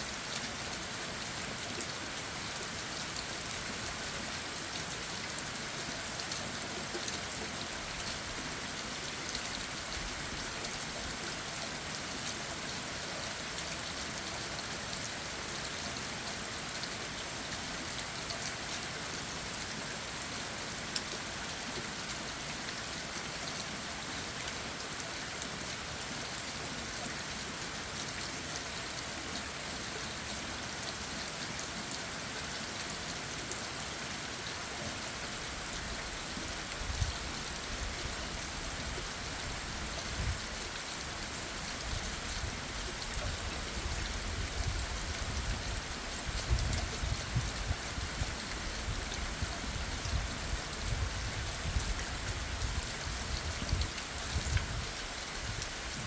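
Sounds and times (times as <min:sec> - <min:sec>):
rain pattering on leaves: 0:00.0 - 0:56.0.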